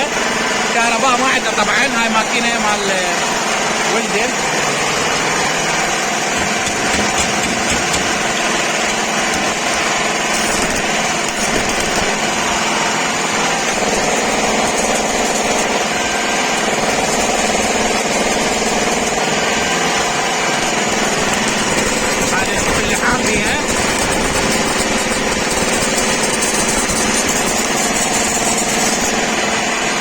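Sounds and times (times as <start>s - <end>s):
petrol generator running: 0.0s - 30.0s.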